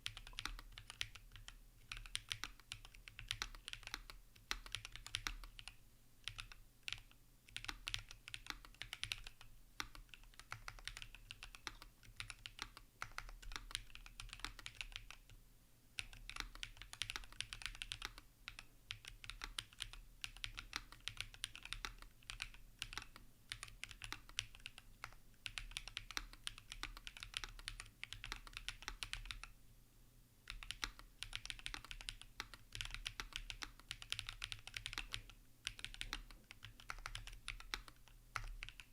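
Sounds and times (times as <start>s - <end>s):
mechanical keyboard typing: 0.0s - 15.3s, 16.0s - 29.5s, 30.5s - 38.9s.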